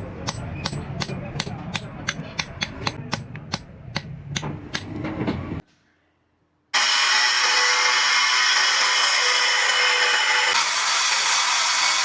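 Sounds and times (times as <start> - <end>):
hammer striking metal: 0.0 - 5.4.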